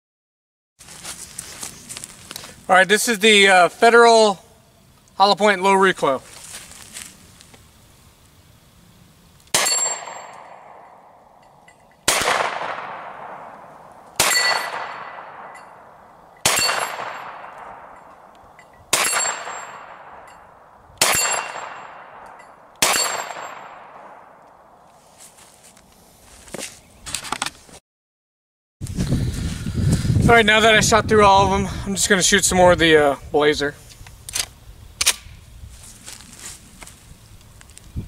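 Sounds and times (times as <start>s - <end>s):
carbine gunshots with ringing echo: 9.5s - 24.8s.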